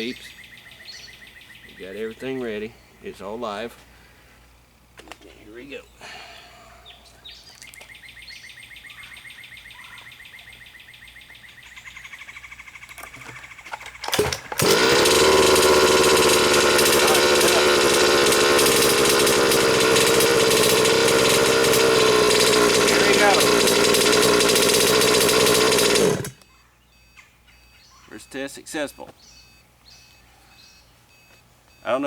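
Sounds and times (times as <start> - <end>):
starter ticking: 13.1 - 26.5
engine knocks: 13.9 - 26.4
two-stroke engine running: 14.0 - 26.4.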